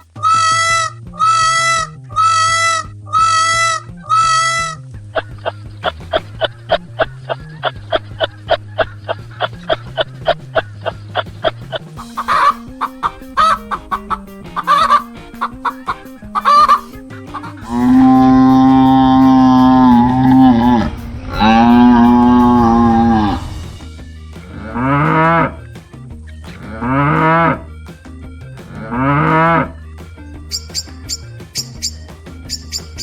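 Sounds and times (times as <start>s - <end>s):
chicken clucking: 12.0s - 23.6s
cow mooing: 17.7s - 23.5s.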